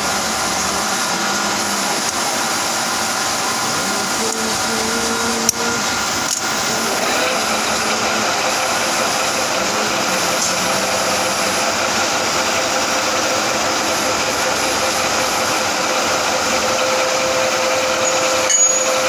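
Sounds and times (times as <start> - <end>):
metal lathe humming: 0.0 - 19.0.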